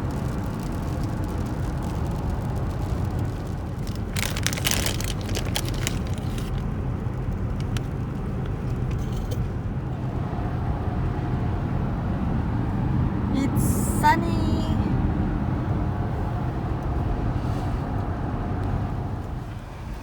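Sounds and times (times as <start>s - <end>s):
sharp crackling and clicking: 0.0s - 9.1s
engine and tyre rumble: 0.0s - 20.0s.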